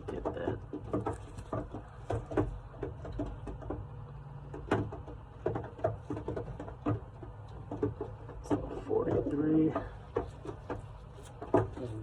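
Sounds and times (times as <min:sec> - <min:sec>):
handling clicks and knocks: 0:00.0 - 0:12.0.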